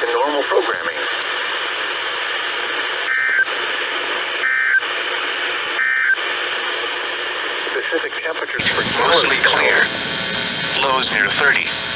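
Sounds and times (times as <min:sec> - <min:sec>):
radio static hiss: 0:00.0 - 0:11.9
digital data bursts: 0:08.6 - 0:11.9.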